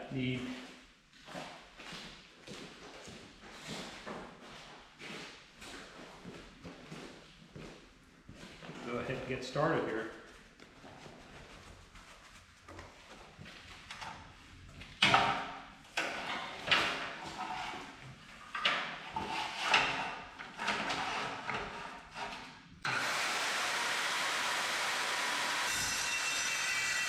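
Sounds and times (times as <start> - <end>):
circular saw whining: 22.9 - 27.0.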